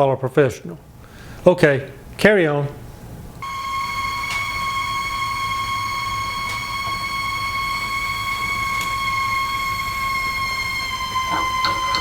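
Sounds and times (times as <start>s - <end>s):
faucet running: 3.4s - 12.0s
plumbing high-pitched whistle: 3.4s - 12.0s.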